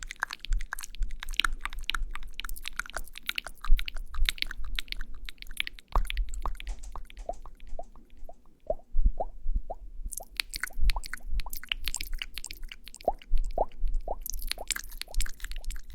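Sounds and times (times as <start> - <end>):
crackly rustling: 0.0 - 8.8
wet plops and clicks: 0.0 - 9.3, 10.1 - 15.9.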